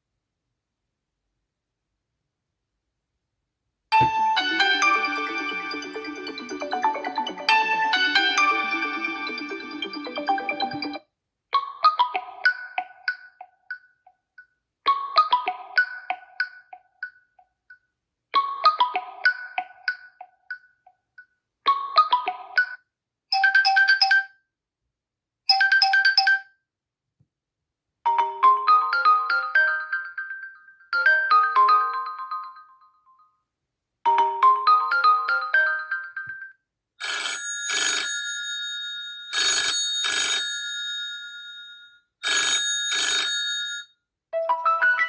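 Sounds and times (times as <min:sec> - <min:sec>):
smartphone ringtone melody: 0:04.1 - 0:11.0
rising chime ringtone: 0:04.4 - 0:11.0.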